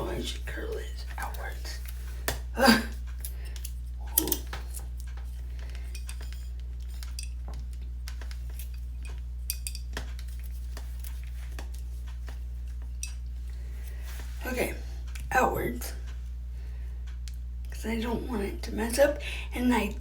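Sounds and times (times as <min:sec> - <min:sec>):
steady low hum: 0:00.0 - 0:20.0
curling iron clicks and clinks: 0:03.1 - 0:13.3.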